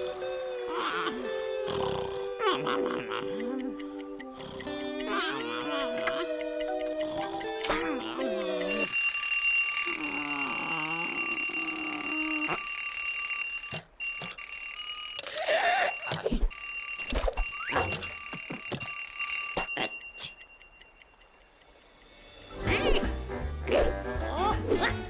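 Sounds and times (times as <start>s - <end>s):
cartoon alarm clock ringing: 1.7s - 21.7s.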